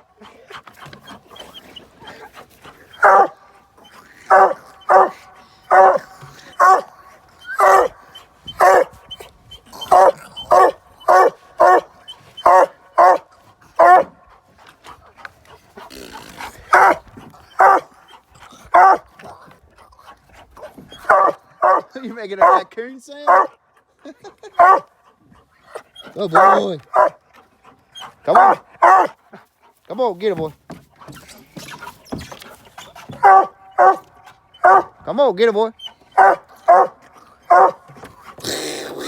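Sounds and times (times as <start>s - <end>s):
dog barking: 3.0s - 3.4s, 4.3s - 8.9s, 9.8s - 14.1s, 16.7s - 17.0s, 17.6s - 17.9s, 18.7s - 19.1s, 21.0s - 22.7s, 23.3s - 23.6s, 24.6s - 24.9s, 26.3s - 27.2s, 28.3s - 29.2s, 33.2s - 34.9s, 36.2s - 38.0s.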